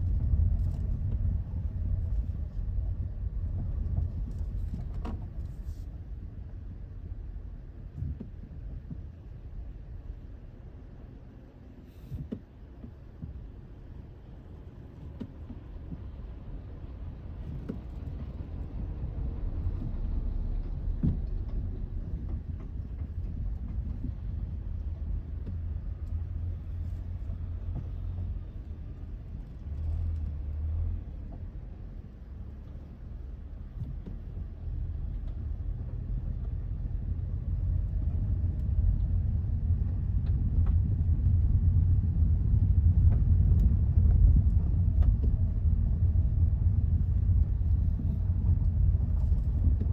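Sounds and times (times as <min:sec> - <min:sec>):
tyre and road rumble: 0:11.7 - 0:49.9.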